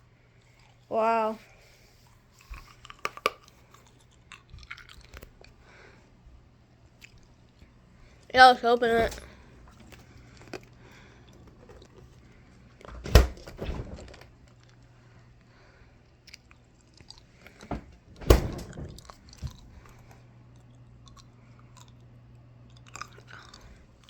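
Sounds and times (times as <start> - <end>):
soft chewing: 0.3 - 8.3, 9.2 - 12.9, 14.4 - 17.7, 19.0 - 24.0
ice cubes crunching in mouth: 2.7 - 5.4, 22.7 - 23.7.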